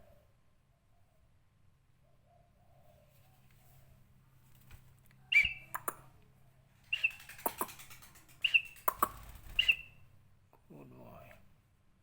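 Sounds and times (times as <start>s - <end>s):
lovebird chirping: 5.2s - 6.1s, 6.8s - 10.1s
sharp clicks: 5.4s - 6.1s, 6.9s - 9.8s.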